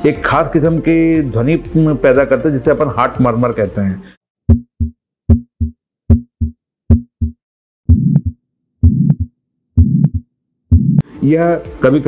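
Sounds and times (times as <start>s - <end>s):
heart murmur: 4.5s - 11.0s
heartbeat: 4.5s - 11.0s.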